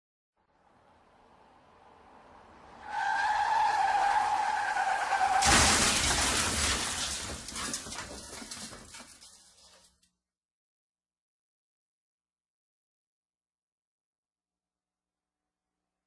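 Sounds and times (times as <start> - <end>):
tyres screeching: 2.8 - 5.8
loud car crash impact: 4.0 - 9.1
debris clattering: 5.0 - 9.9.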